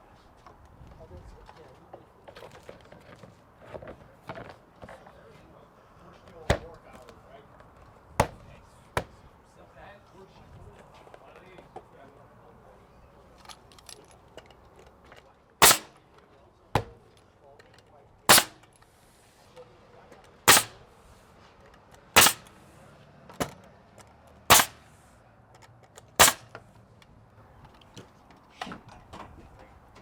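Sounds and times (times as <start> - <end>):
nail gun shots: 6.5 - 6.7, 8.2 - 8.4, 15.6 - 16.0, 16.8 - 17.1, 18.3 - 18.7, 20.5 - 20.9, 22.2 - 22.6, 24.5 - 24.9, 26.2 - 26.6.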